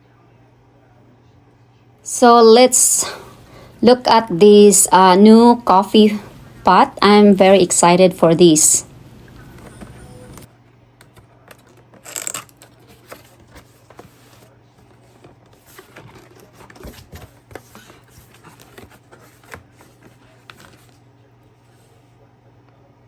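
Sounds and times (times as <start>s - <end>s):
packaging rustling: 9.2s - 21.1s.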